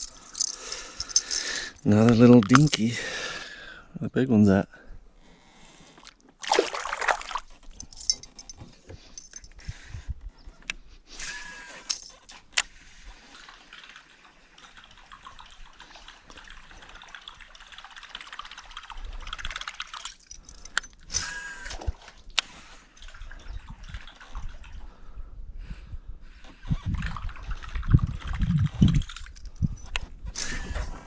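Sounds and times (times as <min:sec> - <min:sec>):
river water trickling: 0:06.0 - 0:08.5, 0:12.6 - 0:24.9.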